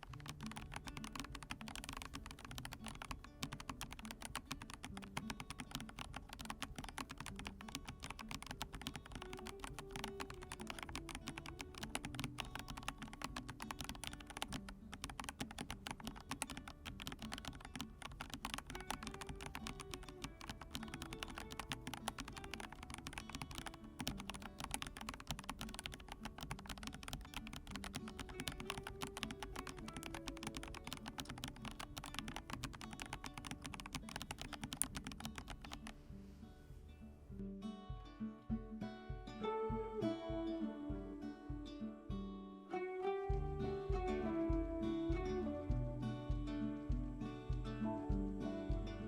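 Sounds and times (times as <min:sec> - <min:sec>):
mechanical keyboard typing: 0:00.0 - 0:36.0
soft background music: 0:00.0 - 0:49.0.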